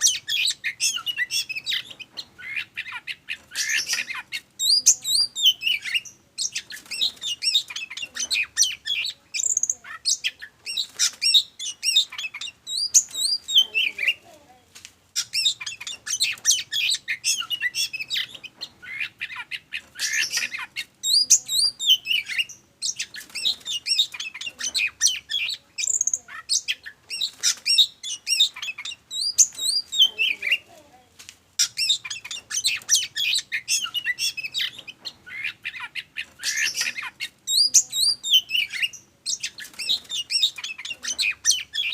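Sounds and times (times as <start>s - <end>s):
magpie-robin singing: 0.0s - 14.4s, 15.2s - 30.8s, 31.6s - 41.9s.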